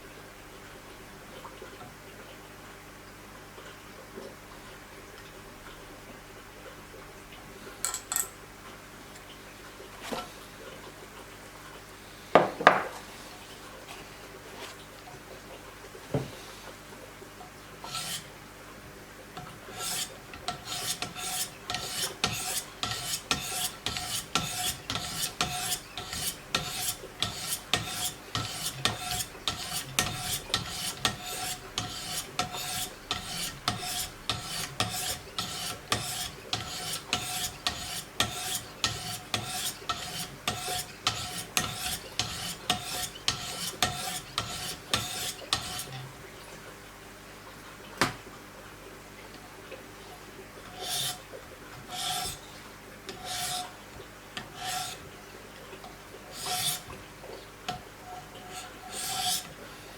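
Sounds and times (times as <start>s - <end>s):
sharpening stone rasping on knife: 17.9s - 18.3s, 19.7s - 46.0s, 50.8s - 51.2s, 51.9s - 52.4s, 53.1s - 53.7s, 54.6s - 55.0s, 56.4s - 56.8s, 58.5s - 59.5s.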